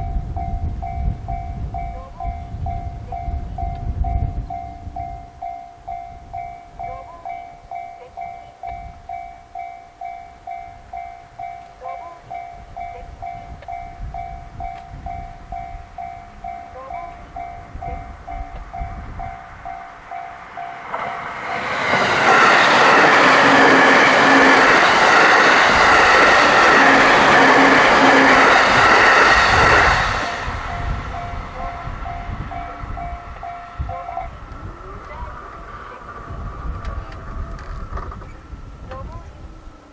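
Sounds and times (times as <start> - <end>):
level crossing warning bell: 0.0 - 36.6
train passing loudly: 0.0 - 39.9.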